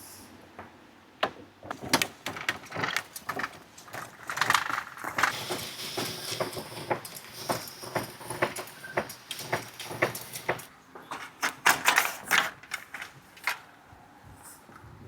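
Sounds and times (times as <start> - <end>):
metal fittings clicking and rattling: 1.8 - 10.7.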